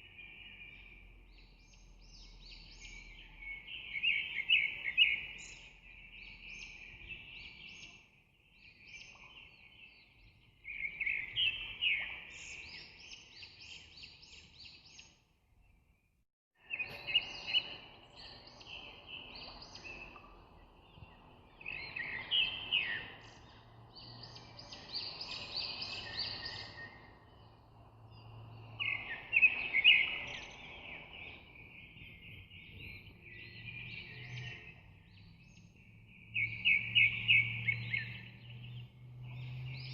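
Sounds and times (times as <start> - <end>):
birds chirping: 16.7 - 39.9.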